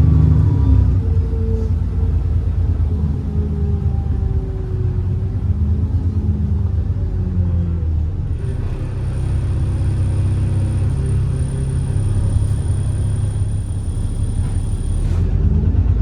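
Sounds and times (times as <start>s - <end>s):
bus diesel engine rumbling: 0.0s - 16.0s
high turbo whistle: 8.4s - 15.3s.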